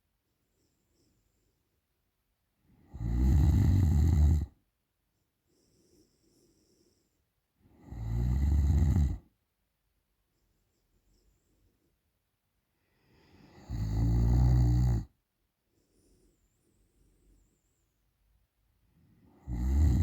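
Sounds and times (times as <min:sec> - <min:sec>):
woman snoring loudly: 0:02.9 - 0:04.5, 0:07.8 - 0:09.2, 0:13.5 - 0:15.1, 0:19.4 - 0:20.0
faint breathing: 0:05.4 - 0:07.8, 0:10.3 - 0:13.7, 0:15.6 - 0:18.3.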